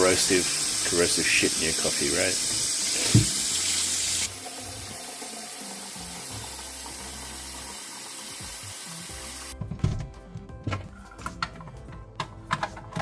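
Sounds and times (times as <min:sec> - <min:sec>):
water running: 0:00.0 - 0:09.6.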